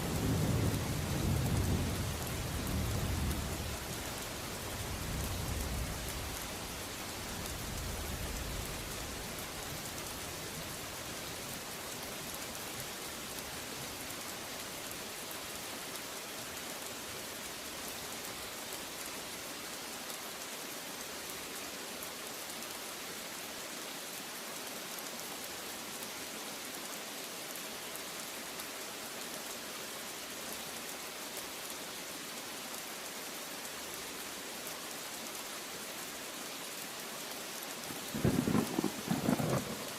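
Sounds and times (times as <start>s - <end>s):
steady rain: 0.0s - 39.9s
low thunder rumble: 38.1s - 39.9s.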